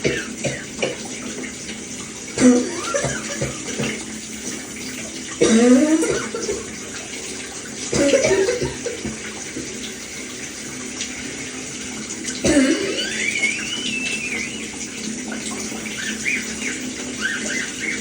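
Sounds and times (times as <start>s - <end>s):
wheezy coughing: 0.0s - 0.8s, 5.4s - 6.6s, 7.9s - 8.9s, 12.4s - 13.3s
shower water running: 0.0s - 18.0s.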